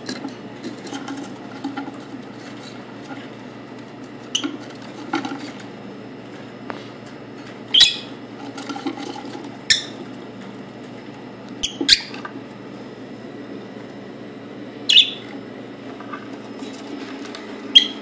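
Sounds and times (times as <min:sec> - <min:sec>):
parrot calling: 0:07.7 - 0:08.2, 0:14.8 - 0:15.3, 0:17.7 - 0:18.0.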